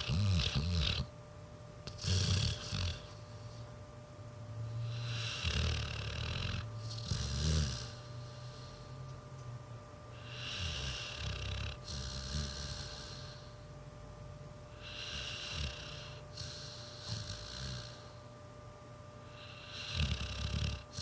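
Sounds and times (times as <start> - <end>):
dog snoring: 0.0 - 1.2, 1.8 - 3.7, 4.6 - 9.2, 10.1 - 13.7, 14.7 - 18.3, 19.2 - 21.0.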